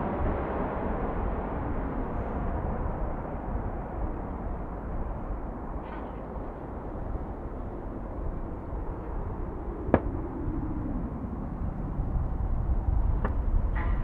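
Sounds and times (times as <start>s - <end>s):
jet airliner engine noise: 0.0s - 14.0s
low rumble: 6.2s - 14.0s.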